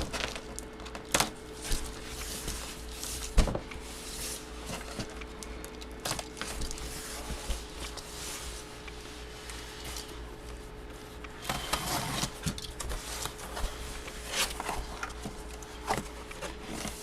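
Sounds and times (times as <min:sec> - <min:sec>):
cardboard and packaging rustling: 0:00.0 - 0:17.0.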